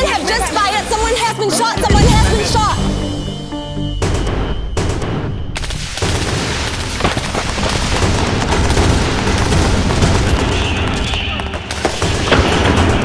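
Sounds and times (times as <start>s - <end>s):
blank gunfire bursts: 4.0s - 13.0s.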